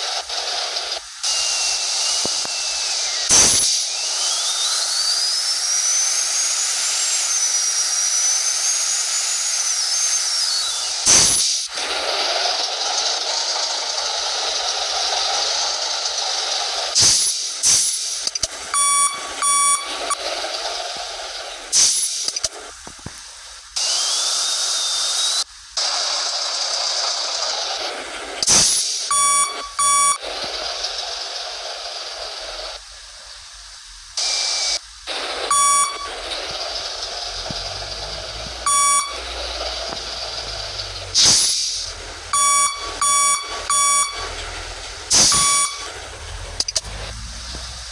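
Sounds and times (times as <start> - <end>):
steady rushing noise: 35.0 - 47.9
bus horn toots: 45.2 - 45.9.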